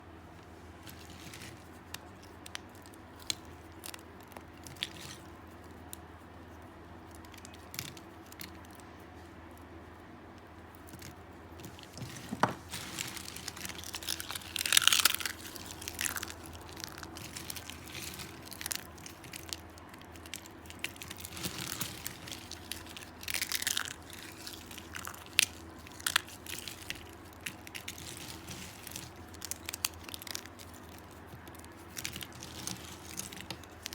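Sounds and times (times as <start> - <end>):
dry soap being cut crunching: 12.1 - 33.9.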